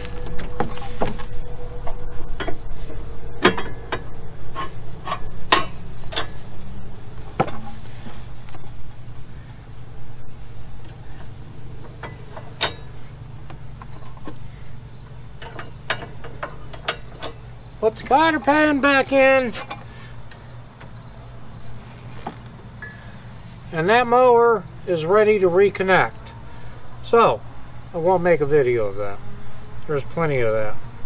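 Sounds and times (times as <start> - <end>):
insects chirping: 0.0 - 31.0
metal clanks and taps: 3.4 - 6.4, 7.3 - 7.8, 10.8 - 14.4, 15.4 - 17.4, 19.5 - 21.0.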